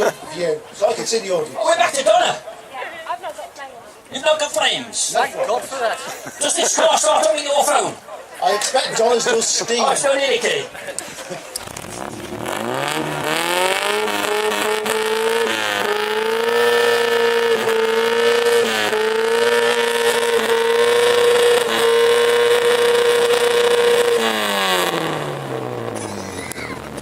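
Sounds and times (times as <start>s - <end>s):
car engine revving: 11.6s - 27.0s.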